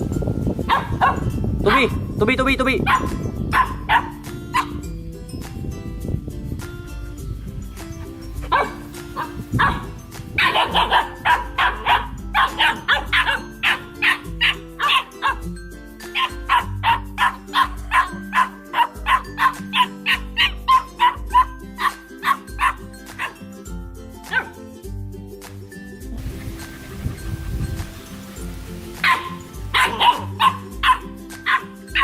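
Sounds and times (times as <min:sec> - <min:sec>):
background music: 0:00.0 - 0:32.0
puppy barking: 0:00.7 - 0:02.0, 0:02.8 - 0:04.8, 0:08.4 - 0:15.5, 0:16.1 - 0:23.4, 0:24.3 - 0:24.6, 0:29.0 - 0:32.0.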